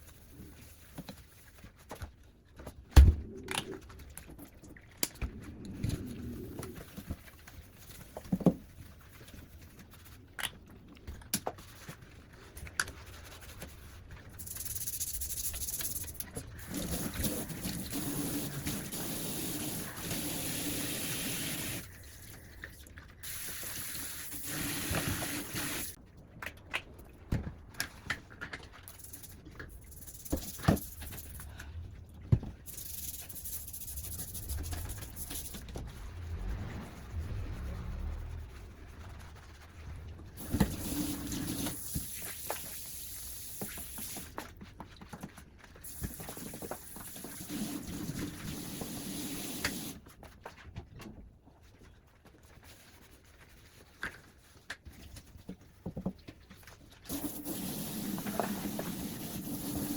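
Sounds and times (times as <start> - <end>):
tap water running: 23.2 - 26.0, 57.1 - 59.9.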